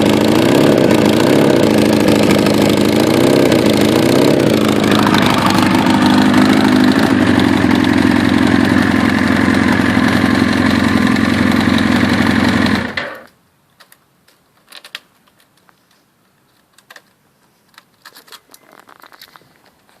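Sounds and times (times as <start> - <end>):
motorcycle engine with leaking exhaust: 0.0 - 13.3.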